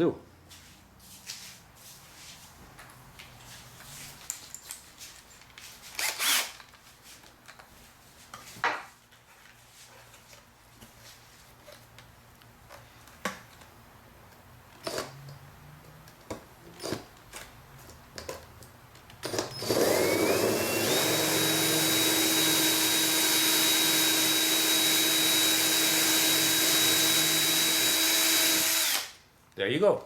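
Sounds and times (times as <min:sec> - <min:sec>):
cordless drill whining: 0:05.9 - 0:06.6, 0:19.2 - 0:29.2.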